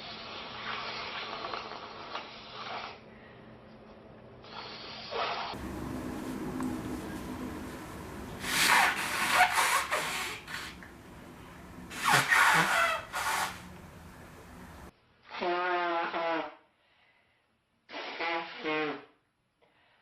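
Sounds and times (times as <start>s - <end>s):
person blowing nose: 8.4s - 10.8s, 11.9s - 13.7s, 15.3s - 16.6s, 17.9s - 19.2s.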